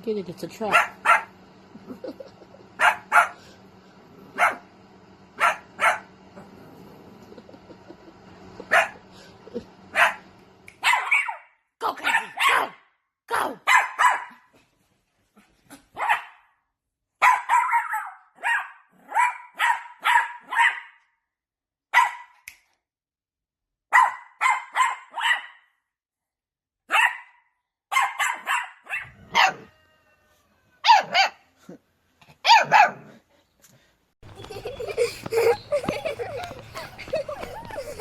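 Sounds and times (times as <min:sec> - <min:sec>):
dog barking: 0:00.7 - 0:01.4, 0:02.8 - 0:03.4, 0:04.3 - 0:04.6, 0:05.4 - 0:06.1, 0:08.7 - 0:09.0, 0:09.9 - 0:10.2, 0:10.8 - 0:12.9, 0:13.6 - 0:14.5, 0:16.0 - 0:16.6, 0:17.2 - 0:21.0, 0:21.9 - 0:22.4, 0:23.9 - 0:25.7, 0:26.9 - 0:29.8, 0:30.8 - 0:31.5, 0:32.4 - 0:33.2.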